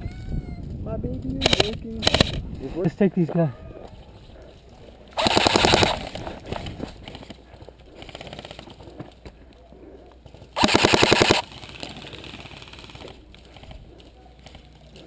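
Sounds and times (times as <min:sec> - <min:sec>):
airsoft gun bursts of clicks: 0:01.4 - 0:02.4, 0:05.2 - 0:06.1, 0:10.6 - 0:13.2.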